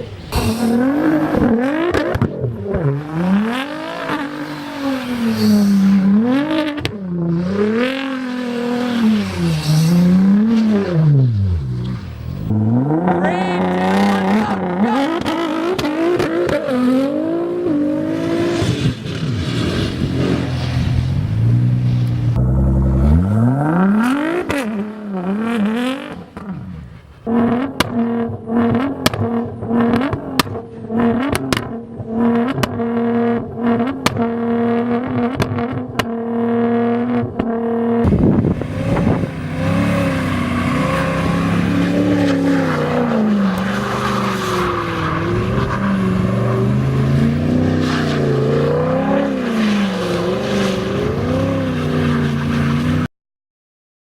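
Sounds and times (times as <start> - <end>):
car engine revving with crackles: 0.0 - 53.1
wheels spinning in burnout: 38.0 - 53.1.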